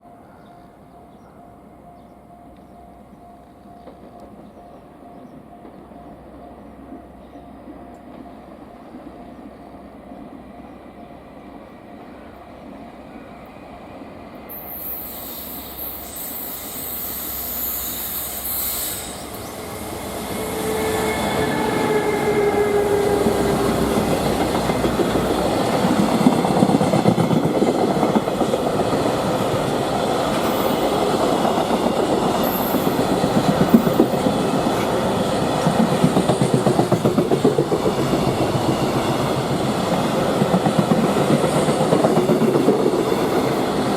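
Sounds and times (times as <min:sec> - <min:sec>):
electric locomotive whine: 0:00.0 - 0:43.9
train wheels clattering over rail joints: 0:23.5 - 0:43.9.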